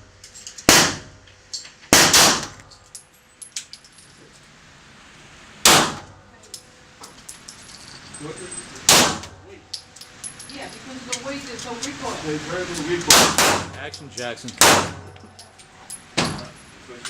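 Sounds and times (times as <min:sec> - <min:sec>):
pistol shots: 0:00.7 - 0:01.1, 0:01.9 - 0:02.6, 0:05.6 - 0:06.1, 0:08.9 - 0:09.4, 0:13.1 - 0:13.8, 0:14.6 - 0:15.1.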